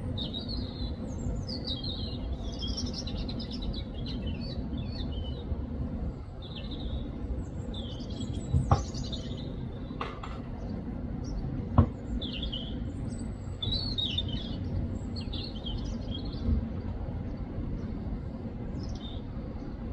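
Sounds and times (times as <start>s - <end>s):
low background rumble: 0.0s - 19.9s
robin chirping: 0.2s - 5.4s, 6.4s - 10.0s, 12.0s - 16.5s, 18.8s - 19.2s
sharp knocks: 11.8s - 12.0s.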